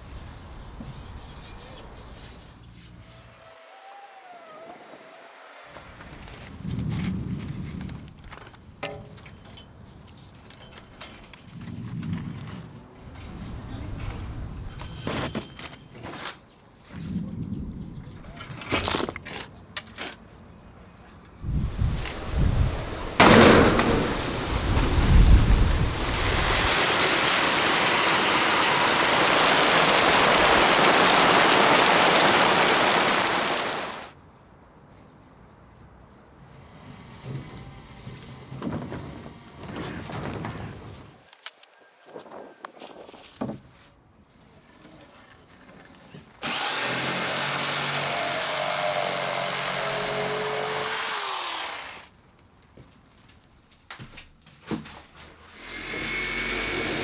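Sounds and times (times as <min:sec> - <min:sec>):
thunder rumbling: 0:21.6 - 0:34.0
heavy rain: 0:21.8 - 0:34.1.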